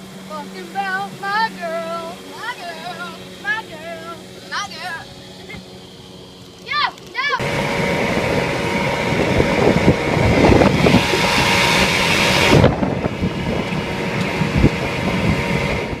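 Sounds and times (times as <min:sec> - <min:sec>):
outboard motor running: 0:00.0 - 0:16.0
wind buffeting microphone: 0:07.4 - 0:16.0.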